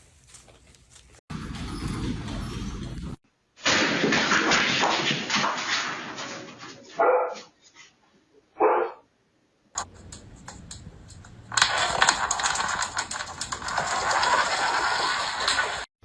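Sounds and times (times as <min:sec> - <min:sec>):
dog barking: 0:07.0 - 0:07.5, 0:08.6 - 0:09.1
busy clicking and rattling: 0:09.8 - 0:15.9.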